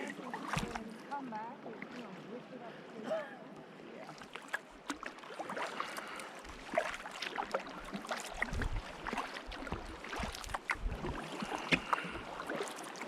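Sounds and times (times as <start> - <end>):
paddle splashing in water: 0.0 - 13.0
water drips: 4.1 - 13.0.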